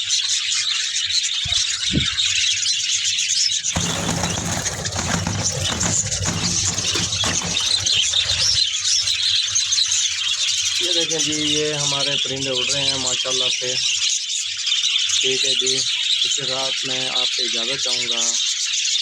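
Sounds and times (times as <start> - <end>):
low rustling: 3.8 - 9.2.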